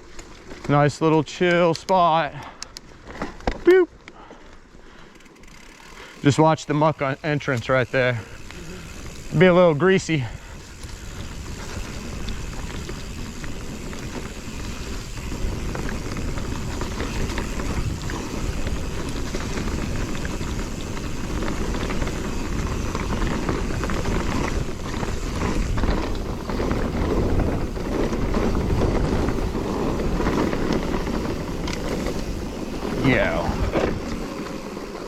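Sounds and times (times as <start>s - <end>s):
tyre noise on dirt: 0.0s - 4.0s, 5.3s - 35.0s
wind rushing over microphone: 10.3s - 34.4s.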